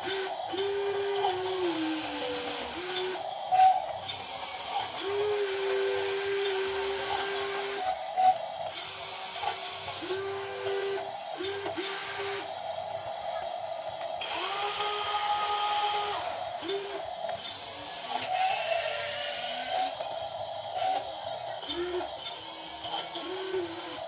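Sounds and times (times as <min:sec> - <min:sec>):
small electric motors whining: 0:00.0 - 0:24.0.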